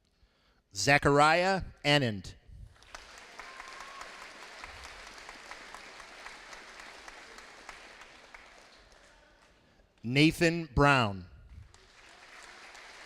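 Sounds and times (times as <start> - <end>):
audience clapping: 2.7 - 10.1, 11.5 - 13.0.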